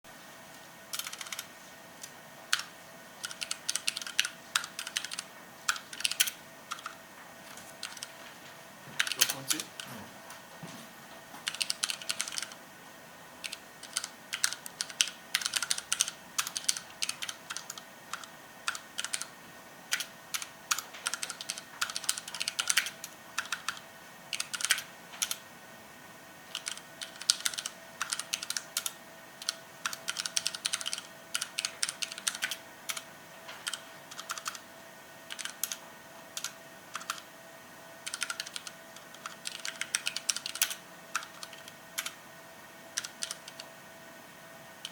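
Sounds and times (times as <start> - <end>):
typing on mechanical keyboard: 0.9 - 8.2, 9.0 - 9.9, 11.4 - 12.6, 13.4 - 19.3, 19.9 - 25.4, 26.5 - 33.0, 33.6 - 34.6, 35.3 - 35.8, 36.4 - 37.2, 38.0 - 42.2, 43.0 - 43.7.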